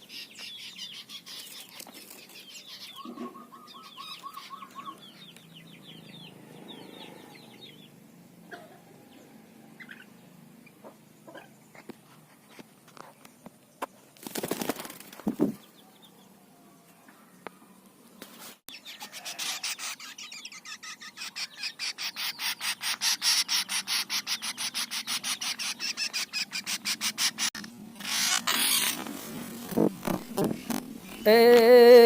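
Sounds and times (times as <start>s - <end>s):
wings flapping: 14.1s - 15.6s, 26.0s - 31.2s.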